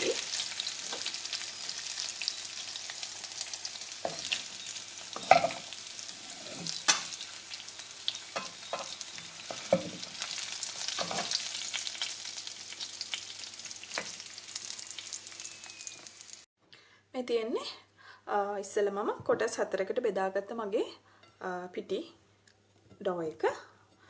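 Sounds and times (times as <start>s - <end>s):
chicken sizzling in oil: 0.0s - 16.5s.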